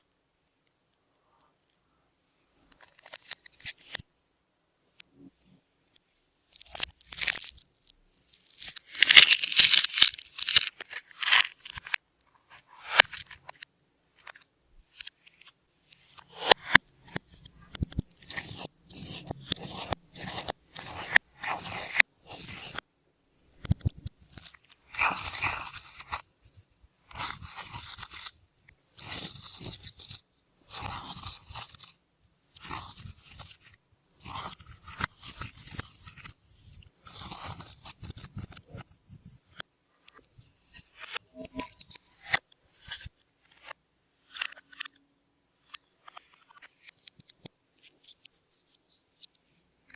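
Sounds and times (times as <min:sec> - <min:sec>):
slime crackling and popping: 0:06.6 - 0:10.8.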